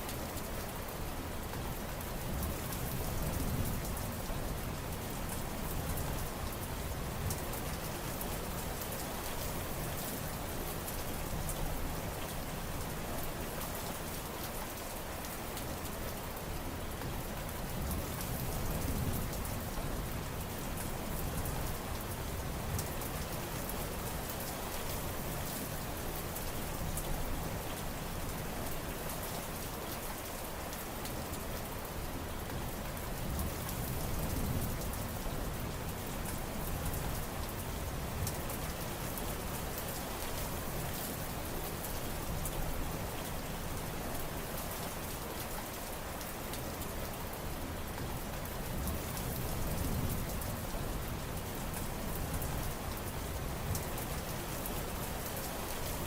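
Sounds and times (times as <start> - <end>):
heavy rain: 0.0 - 56.0.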